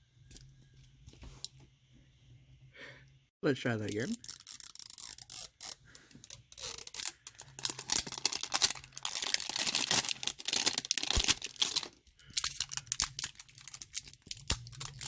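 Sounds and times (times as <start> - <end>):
packaging tearing and crinkling: 4.1 - 15.0.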